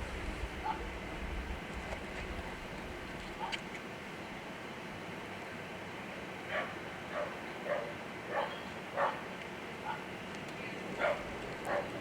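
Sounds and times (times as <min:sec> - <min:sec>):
dog barking: 0:00.6 - 0:00.8, 0:06.5 - 0:09.2, 0:09.8 - 0:10.0, 0:11.0 - 0:12.0.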